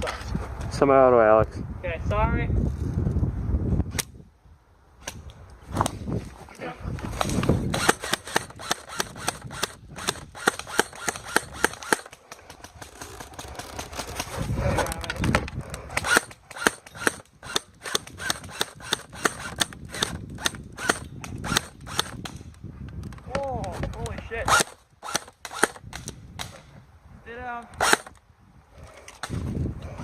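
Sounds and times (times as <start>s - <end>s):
airsoft guns firing: 7.7s - 14.4s.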